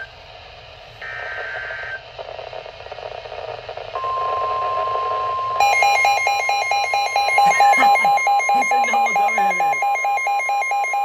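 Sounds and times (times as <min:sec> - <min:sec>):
steady warning alarm tone: 0:04.0 - 0:11.0
radio static: 0:07.1 - 0:09.9.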